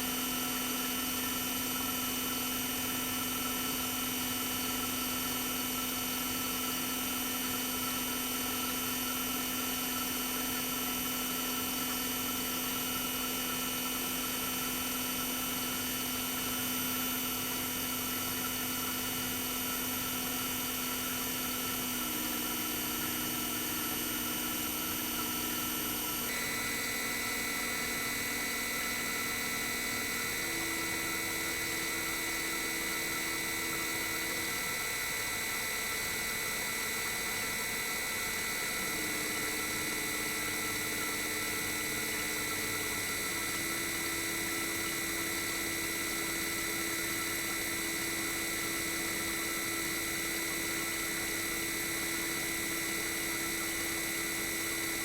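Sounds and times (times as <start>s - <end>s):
compressor whining: 21.3s - 49.1s.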